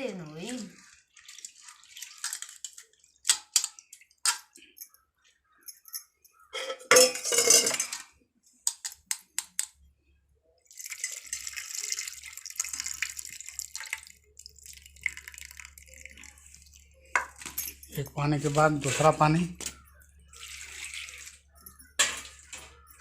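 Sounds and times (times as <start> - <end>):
water pouring: 0.1 - 4.2, 10.6 - 23.0
water splashing in a pot: 0.1 - 4.5, 10.7 - 23.0.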